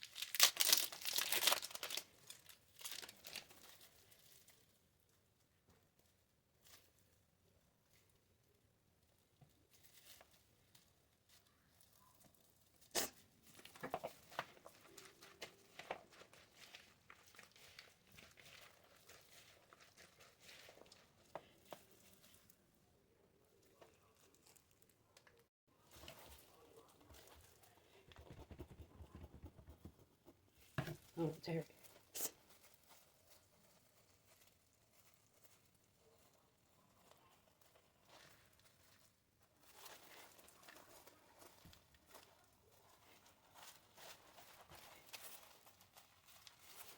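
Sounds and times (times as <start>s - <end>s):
hands handling food and utensils: 9.3s - 29.8s.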